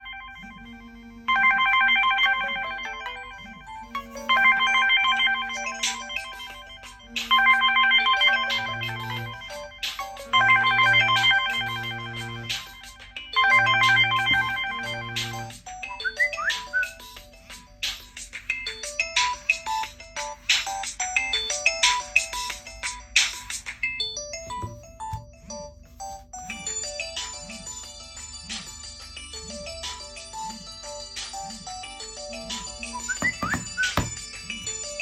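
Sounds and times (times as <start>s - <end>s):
bell-like ringtone melody: 1.4s - 6.5s, 33.0s - 35.0s.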